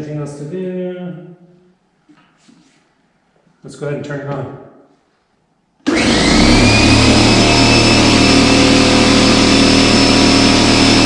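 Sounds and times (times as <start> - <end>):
air compressor running: 5.8 - 11.0.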